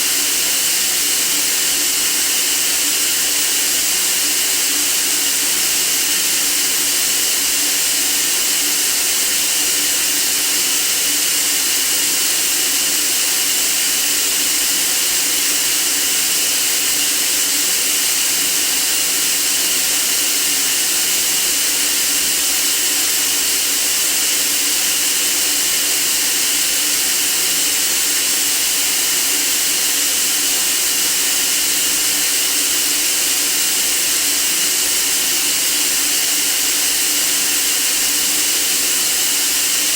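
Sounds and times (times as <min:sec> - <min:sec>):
steady white noise hiss: 0:00.0 - 0:02.1.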